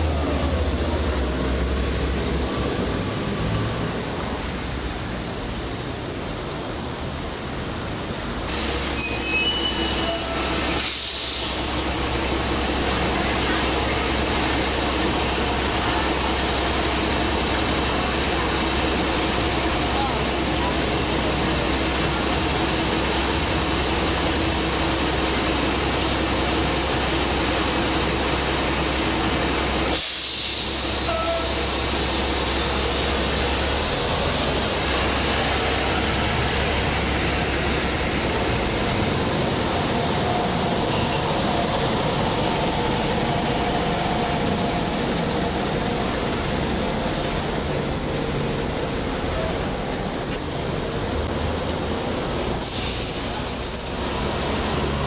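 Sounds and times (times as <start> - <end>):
traffic noise: 0.0 - 55.0
burst of hissing: 29.9 - 33.5.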